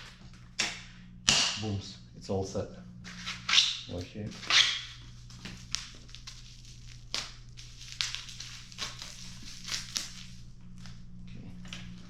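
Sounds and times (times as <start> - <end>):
steady low hum: 0.0 - 12.0
crackling clicks and rustles: 4.0 - 12.0.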